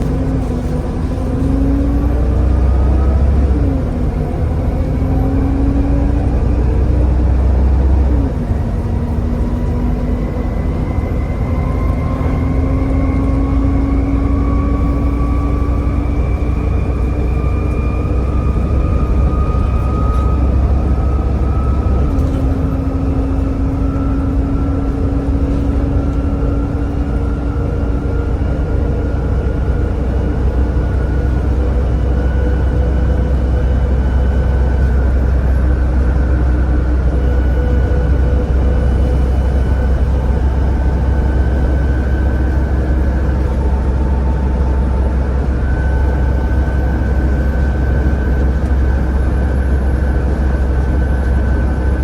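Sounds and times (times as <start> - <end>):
bus engine accelerating: 0.0 - 52.0
rising whine: 0.0 - 52.0.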